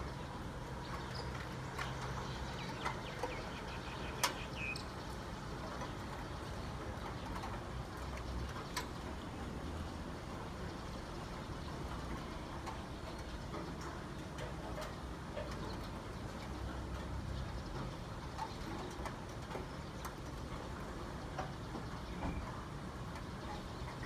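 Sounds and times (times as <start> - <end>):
steady rain falling: 0.0 - 24.0.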